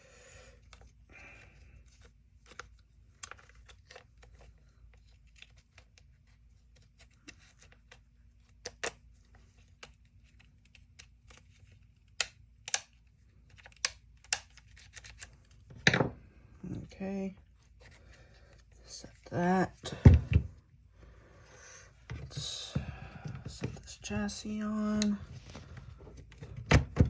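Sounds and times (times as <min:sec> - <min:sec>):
clicks of small plastic parts: 0:09.7 - 0:15.4.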